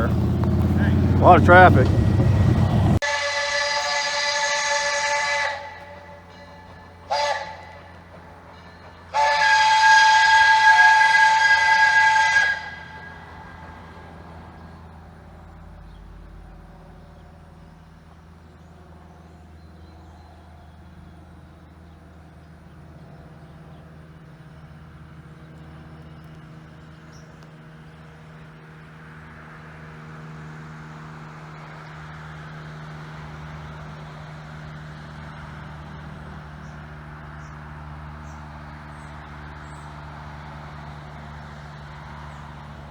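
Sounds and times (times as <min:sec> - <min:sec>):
car engine hum: 0:00.0 - 0:04.3, 0:05.0 - 0:42.9
tyre and road noise: 0:00.0 - 0:42.9.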